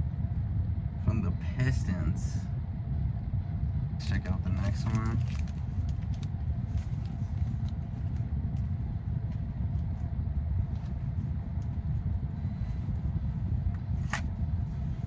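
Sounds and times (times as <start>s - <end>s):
low background rumble: 0.0s - 15.0s.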